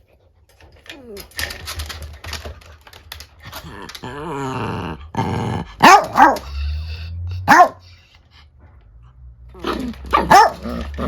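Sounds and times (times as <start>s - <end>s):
small dogs barking: 5.8s - 6.6s, 7.4s - 8.0s, 9.6s - 11.0s.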